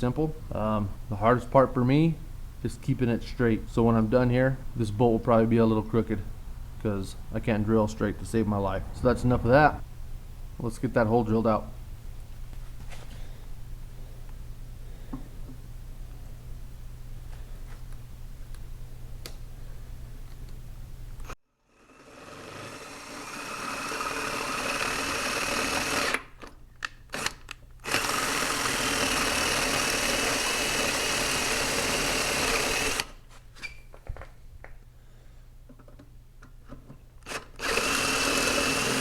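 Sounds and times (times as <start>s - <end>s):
power drill whining: 21.8s - 26.3s, 27.1s - 33.2s, 37.2s - 39.0s.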